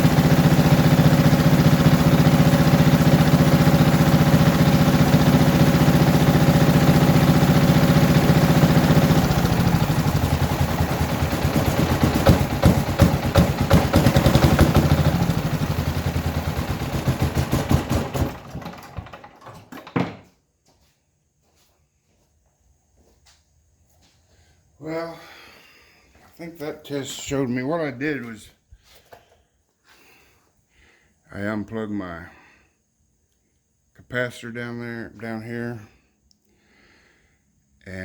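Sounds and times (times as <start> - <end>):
generator engine running: 0.0 - 19.9.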